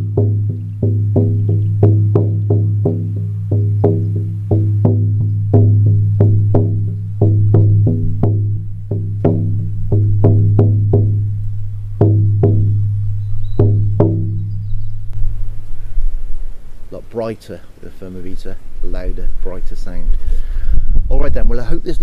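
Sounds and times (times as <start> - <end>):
frame drum booming: 0.0 - 15.6.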